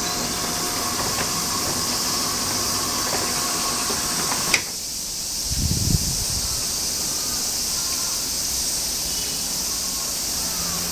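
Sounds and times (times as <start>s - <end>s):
rolling shutter squealing: 0.0s - 4.8s
steady high hiss: 0.0s - 10.9s.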